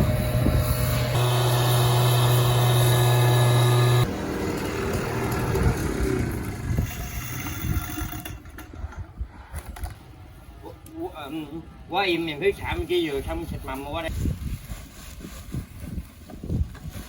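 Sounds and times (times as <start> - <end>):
motor engine humming: 0.0 - 6.9
rough engine-like noise: 0.0 - 8.4.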